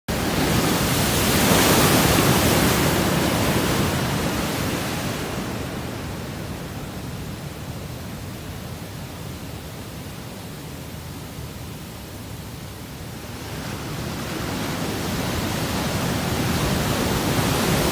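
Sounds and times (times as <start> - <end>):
wave breaking on beach: 0.1 - 7.0, 13.2 - 17.9.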